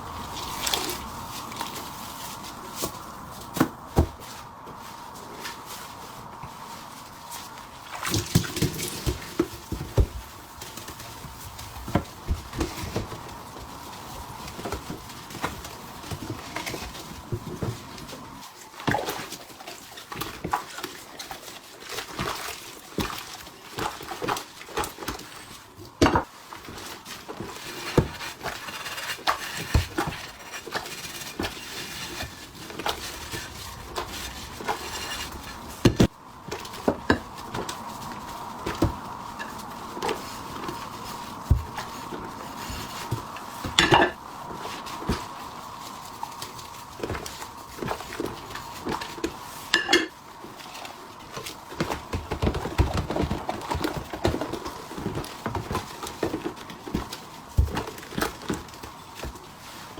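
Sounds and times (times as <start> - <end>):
kitchenware clinking and knocking: 49.8 - 50.1.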